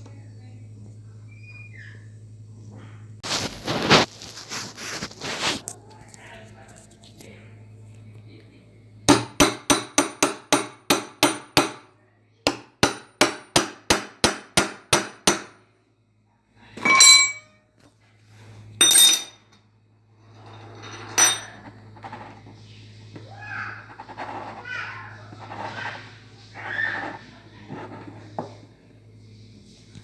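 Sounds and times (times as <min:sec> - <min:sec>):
hammer striking metal: 0:09.1 - 0:11.8, 0:12.5 - 0:15.6, 0:16.8 - 0:17.5
ringing metallic clanks: 0:16.8 - 0:17.6, 0:18.8 - 0:19.4.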